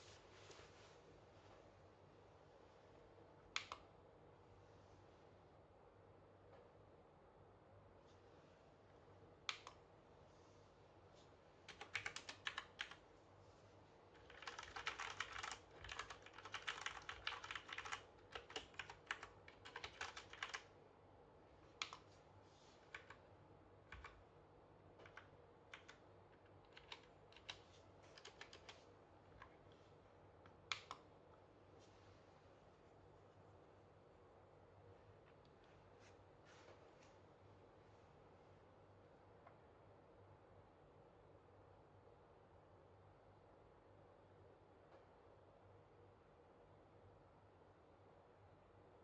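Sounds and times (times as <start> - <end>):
typing on mechanical keyboard: 11.7 - 13.0, 14.2 - 20.7, 22.9 - 23.2, 23.9 - 24.2, 25.0 - 28.8.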